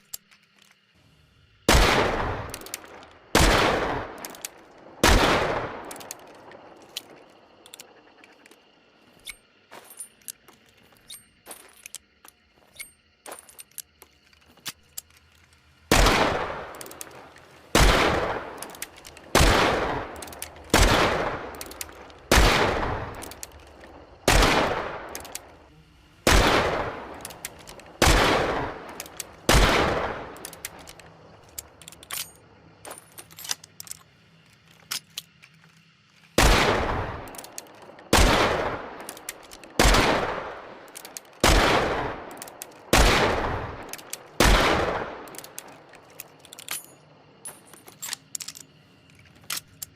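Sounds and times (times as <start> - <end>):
revolver mechanical clicks: 16.5 - 22.3, 30.3 - 36.3, 38.9 - 39.8, 45.2 - 47.0.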